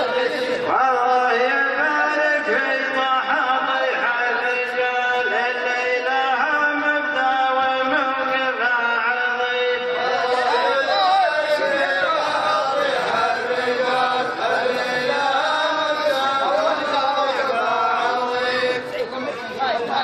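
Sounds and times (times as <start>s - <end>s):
man chanting melodically: 0.0s - 20.0s.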